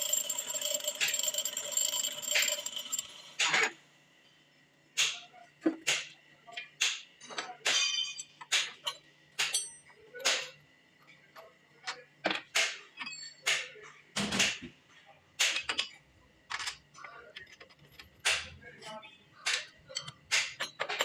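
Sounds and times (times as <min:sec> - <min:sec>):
metal parts clinking and knocking: 0:00.0 - 0:03.6, 0:19.5 - 0:21.0.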